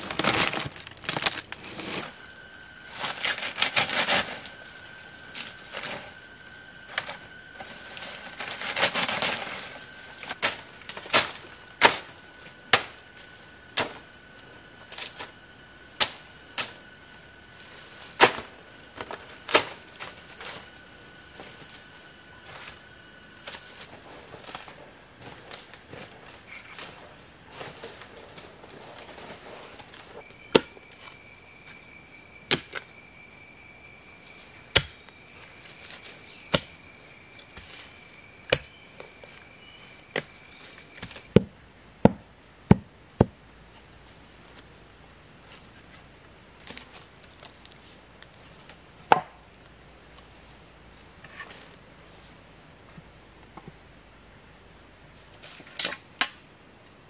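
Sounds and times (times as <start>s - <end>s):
tool chopping wood: 41.0s - 43.4s.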